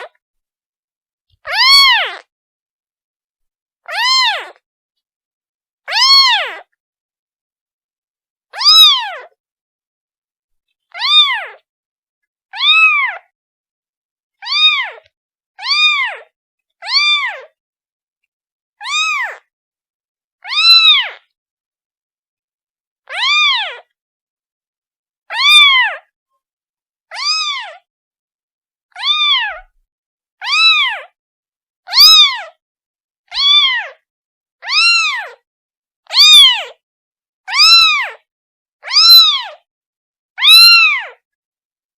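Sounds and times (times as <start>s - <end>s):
kitten meowing: 1.4s - 2.3s, 3.9s - 4.6s, 5.9s - 6.7s, 8.6s - 9.4s, 10.9s - 11.6s, 12.5s - 13.3s, 14.4s - 17.6s, 18.8s - 19.4s, 20.4s - 21.2s, 23.1s - 23.9s, 25.3s - 26.1s, 27.1s - 27.9s, 28.9s - 29.7s, 30.4s - 31.2s, 31.9s - 32.6s, 33.3s - 34.0s, 34.6s - 35.4s, 36.1s - 36.8s, 37.5s - 38.2s, 38.8s - 39.6s, 40.4s - 41.2s.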